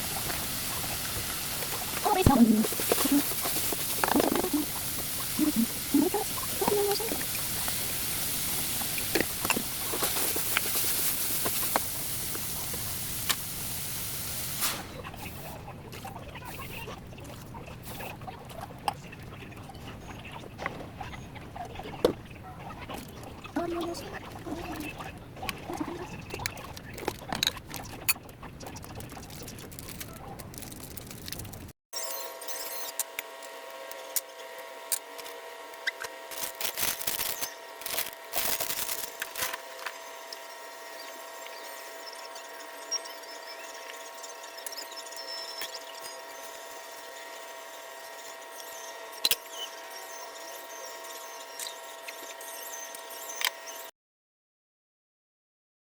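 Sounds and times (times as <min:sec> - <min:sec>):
pan hissing: 0:00.0 - 0:15.5.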